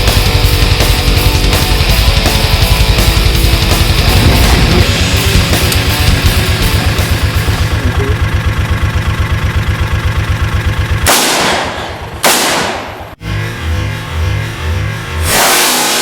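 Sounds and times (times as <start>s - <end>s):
heavy metal music: 0.0s - 8.4s
vehicle engine running: 0.0s - 16.0s
loud sudden bangs: 4.0s - 6.3s, 11.0s - 13.2s.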